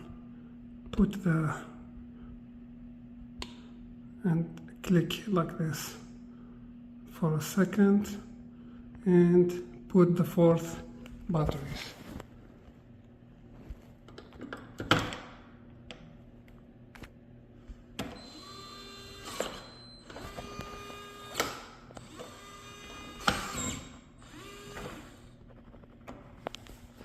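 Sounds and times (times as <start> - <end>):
small electric motor whirring: 18.2 - 25.3.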